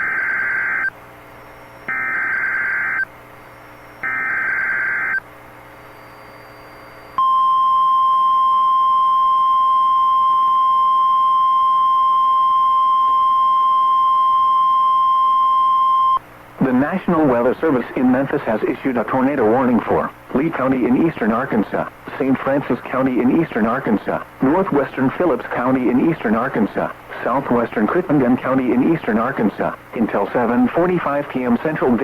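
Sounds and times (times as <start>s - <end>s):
single-pitch warning alarm tone: 1.6s - 5.2s.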